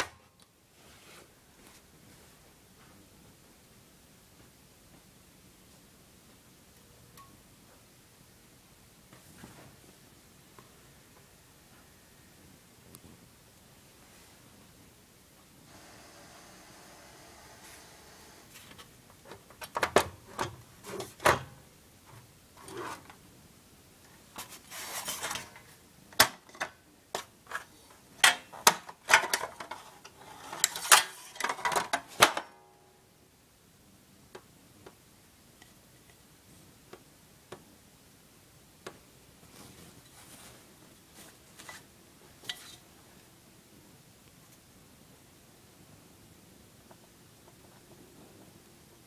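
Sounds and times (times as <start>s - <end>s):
fluorescent tube hissing buzz: 13.4s - 19.0s.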